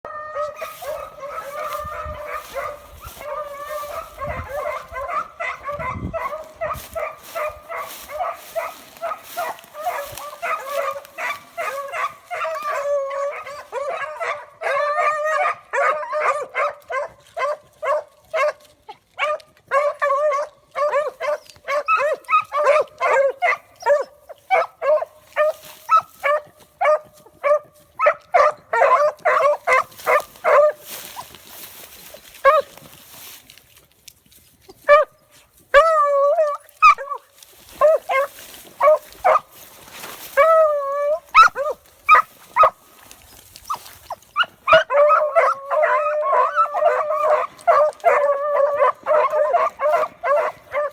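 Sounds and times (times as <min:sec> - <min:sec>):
puppies whining and yelping: 0:09.4 - 0:16.3, 0:35.7 - 0:39.4, 0:40.2 - 0:50.9.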